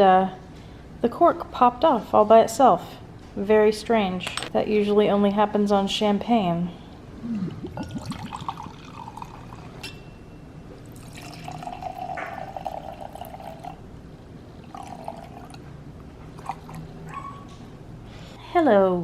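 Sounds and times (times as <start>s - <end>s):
wine pouring into a glass: 7.6s - 9.9s, 10.8s - 13.8s, 14.6s - 15.6s, 16.4s - 16.9s.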